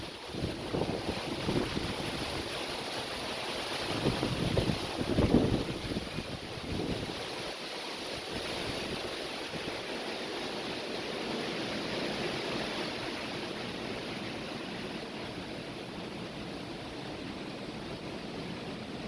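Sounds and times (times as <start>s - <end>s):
strong wind blowing: 0.3s - 2.6s, 3.8s - 7.2s.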